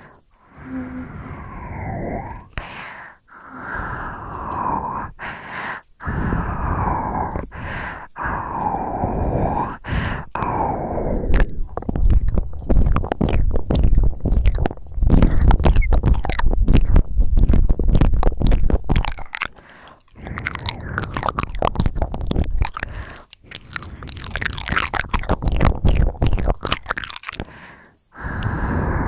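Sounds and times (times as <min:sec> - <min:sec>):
wet mouth clicking and smacking: 0:00.0 - 0:29.0
deep rumble: 0:06.0 - 0:19.4.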